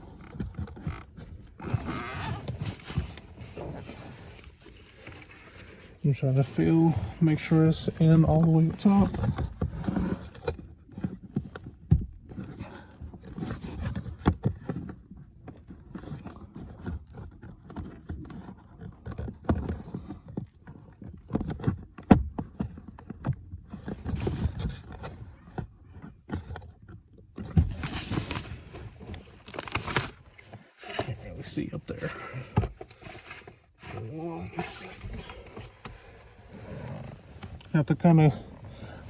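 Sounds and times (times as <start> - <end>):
air filter scraping and rustling: 0.8 - 10.4, 27.4 - 39.0.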